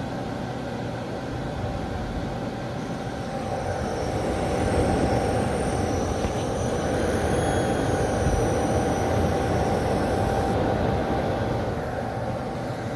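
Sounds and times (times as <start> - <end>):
machine running hum: 0.0 - 12.9
high-pitched squeal: 2.8 - 12.8.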